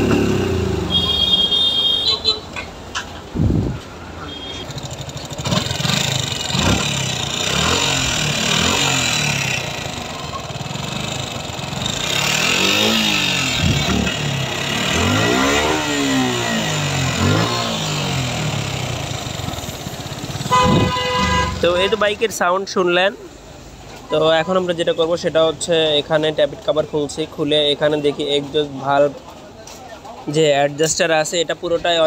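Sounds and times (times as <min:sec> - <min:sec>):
motorcycle engine revving: 0:00.0 - 0:01.6, 0:04.6 - 0:21.9.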